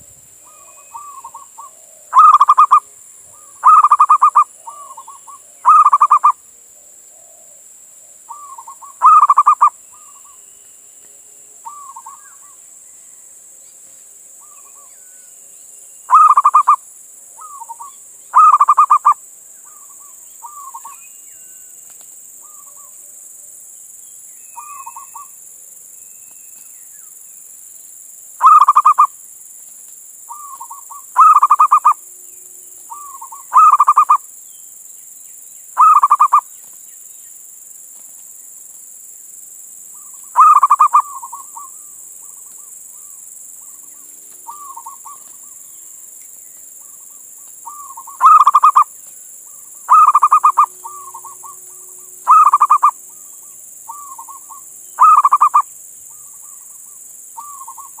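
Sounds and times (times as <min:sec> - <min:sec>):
steady high hiss: 0:00.0 - 0:58.0
dove cooing: 0:00.5 - 0:10.3, 0:11.6 - 0:12.5, 0:16.1 - 0:16.8, 0:17.4 - 0:21.0, 0:28.4 - 0:29.1, 0:30.3 - 0:32.0, 0:32.9 - 0:34.2, 0:35.8 - 0:36.4, 0:40.3 - 0:43.1, 0:44.4 - 0:45.6, 0:47.7 - 0:48.9, 0:49.9 - 0:56.6.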